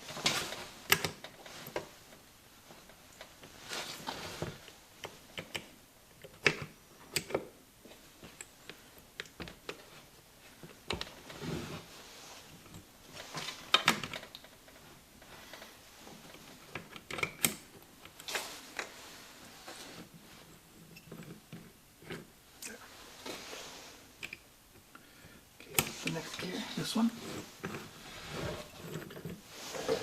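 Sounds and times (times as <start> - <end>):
metal parts clicking and clinking: 27.0 - 29.4.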